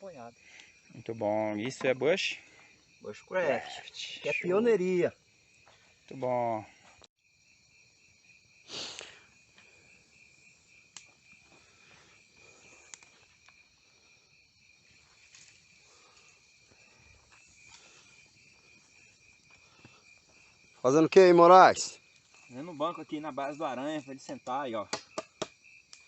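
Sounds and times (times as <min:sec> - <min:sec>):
insects chirring: 0:00.0 - 0:26.0
small ticks: 0:00.5 - 0:00.8, 0:10.9 - 0:11.6, 0:12.5 - 0:13.6, 0:24.2 - 0:26.0.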